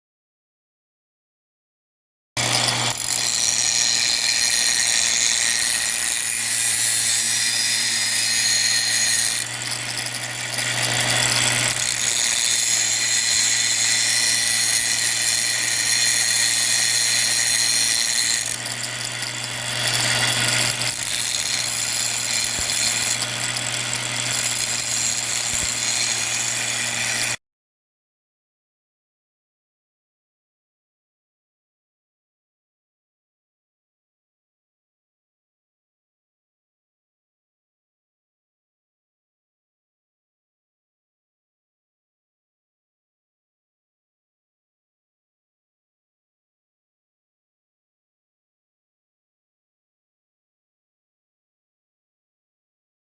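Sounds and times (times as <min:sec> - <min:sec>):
power tool motor whining: 0:02.4 - 0:27.4.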